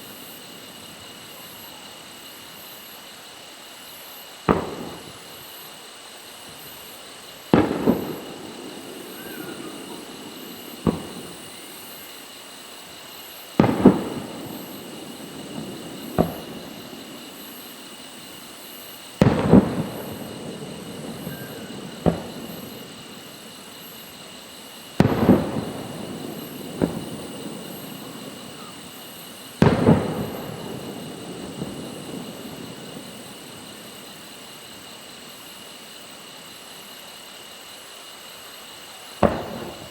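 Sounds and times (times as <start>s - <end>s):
firework booms with rolling echo: 0.0s - 39.9s
sharp firework bang: 4.5s - 5.3s, 7.5s - 12.0s, 13.6s - 17.6s, 19.2s - 23.9s, 25.0s - 34.6s, 39.2s - 39.9s.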